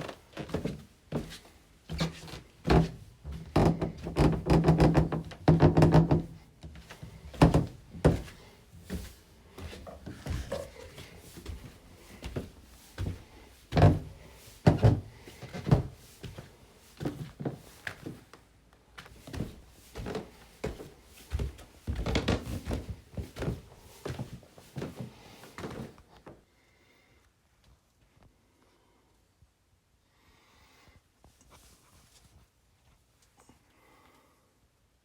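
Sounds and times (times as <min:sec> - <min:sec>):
stairs creaking and knocking: 0:01.9 - 0:16.0, 0:19.3 - 0:23.6.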